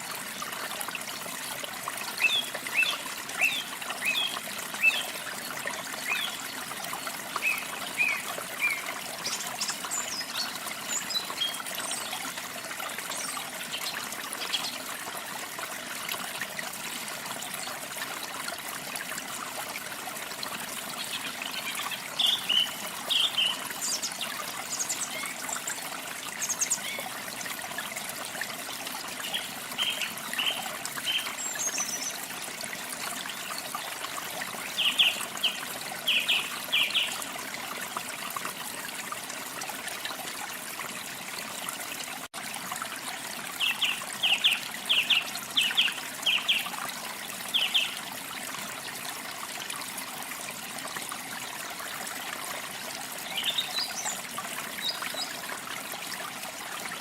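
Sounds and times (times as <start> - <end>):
trickling water: 0.0 - 57.0
small birds chirping: 7.4 - 12.2.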